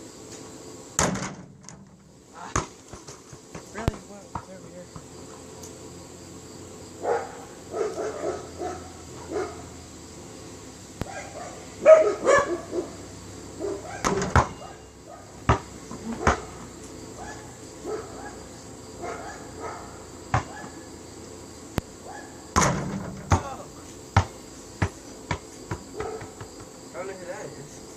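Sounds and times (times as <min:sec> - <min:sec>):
dog barking: 0:07.0 - 0:09.7, 0:11.0 - 0:13.0, 0:13.6 - 0:15.3, 0:17.2 - 0:18.4, 0:19.0 - 0:20.8, 0:22.0 - 0:22.4, 0:26.0 - 0:26.4
basketball thuds: 0:14.0 - 0:14.7, 0:15.4 - 0:16.7, 0:20.3 - 0:20.7, 0:22.5 - 0:23.6, 0:24.2 - 0:26.8.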